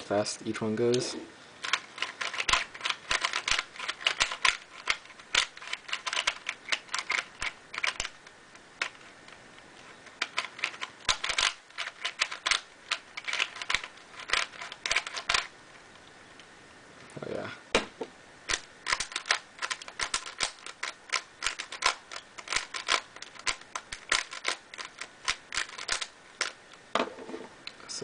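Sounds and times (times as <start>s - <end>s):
puzzle cube clicking: 1.6s - 8.2s, 10.0s - 15.5s, 18.5s - 26.6s.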